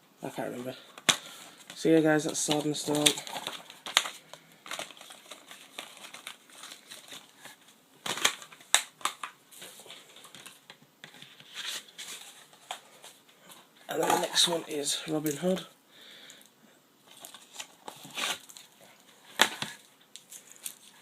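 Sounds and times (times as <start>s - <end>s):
packaging crinkling and rustling: 0.7s - 15.6s, 17.0s - 21.0s.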